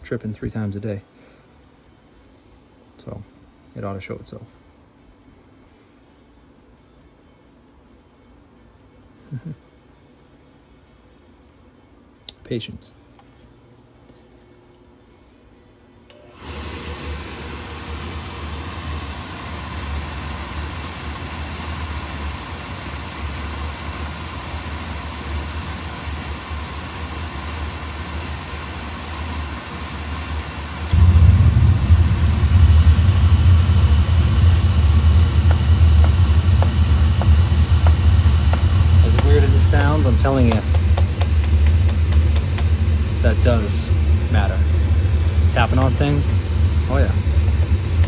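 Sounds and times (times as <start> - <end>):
burner motor whirring: 16.1 - 48.0
burner flame low rumble: 16.5 - 48.0.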